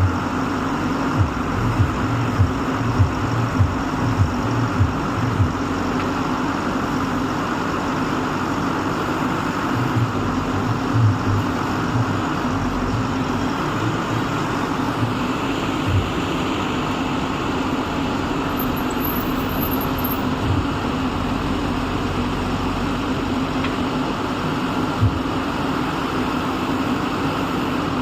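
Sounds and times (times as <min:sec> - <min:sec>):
diesel engine running: 0:00.0 - 0:28.0.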